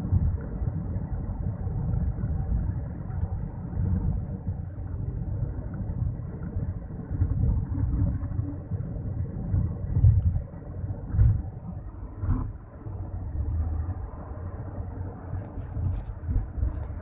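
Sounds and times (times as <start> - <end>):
vehicle rumbling along road: 0.0 - 17.0.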